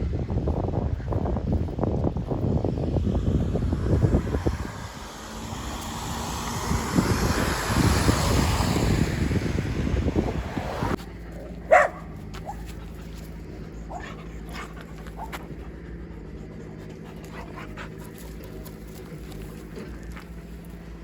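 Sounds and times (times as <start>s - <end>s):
wind buffeting microphone: 0.0s - 11.0s
car passing: 2.4s - 20.9s.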